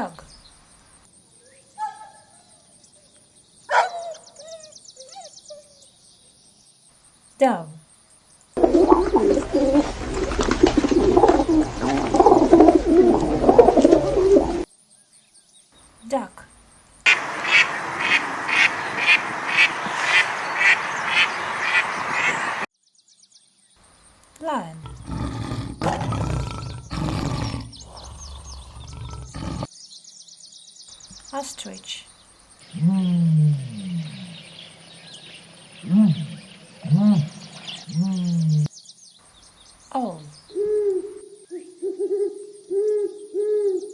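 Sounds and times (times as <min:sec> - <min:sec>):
small birds chirping: 0:00.0 - 0:41.9
lion roaring: 0:08.6 - 0:14.6, 0:24.7 - 0:29.7
doves cooing: 0:08.6 - 0:14.7, 0:17.1 - 0:22.7, 0:24.4 - 0:29.7, 0:39.5 - 0:43.9.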